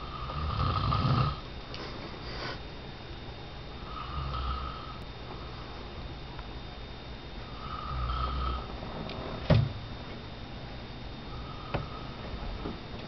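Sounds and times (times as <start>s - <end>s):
person snoring: 0.0s - 2.6s, 3.8s - 5.0s, 7.5s - 8.7s, 11.3s - 12.2s.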